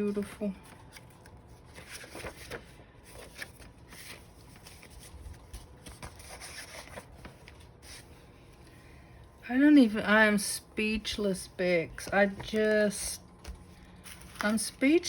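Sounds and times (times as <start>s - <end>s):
paper rustling: 0.0s - 8.8s, 11.7s - 15.0s.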